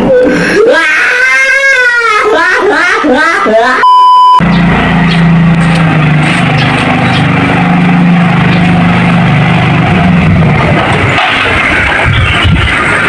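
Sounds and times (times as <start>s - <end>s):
motorcycle engine running: 4.4s - 13.0s.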